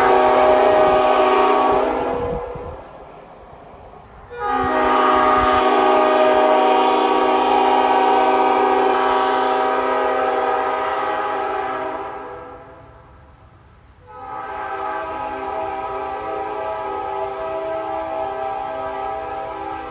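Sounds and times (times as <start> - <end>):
train horn blast: 0.0 - 13.4, 14.0 - 19.9.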